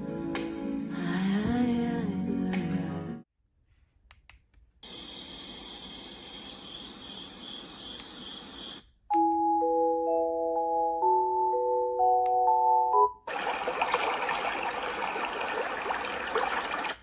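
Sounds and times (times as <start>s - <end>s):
recorded crickets chirping: 4.8s - 9.0s.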